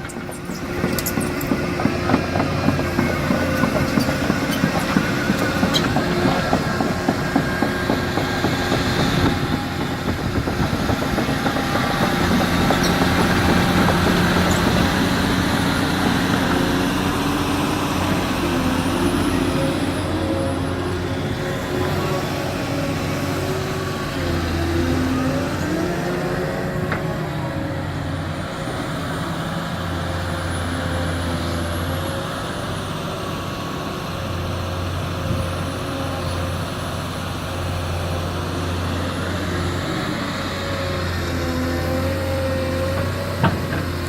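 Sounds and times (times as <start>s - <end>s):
excavator diesel engine: 0.0s - 44.0s.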